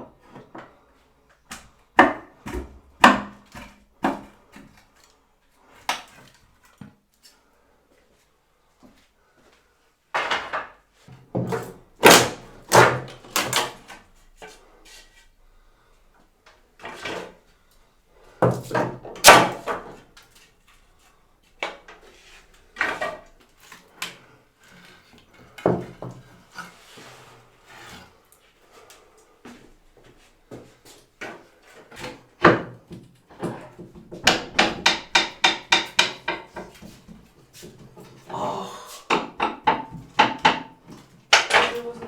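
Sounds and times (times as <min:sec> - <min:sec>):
wood clattering: 0:31.9 - 0:37.2
wooden boards knocking: 0:33.4 - 0:36.9, 0:39.1 - 0:41.9.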